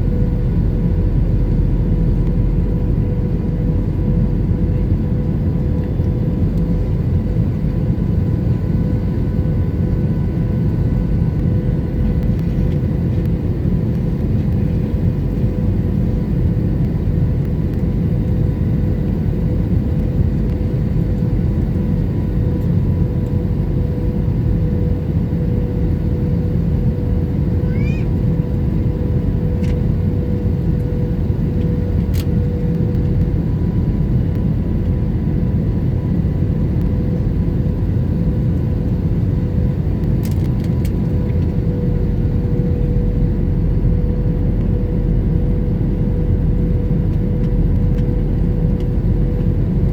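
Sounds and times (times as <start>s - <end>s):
aircraft engines rumbling: 0.0s - 49.9s
steady cabin hum: 27.7s - 49.9s.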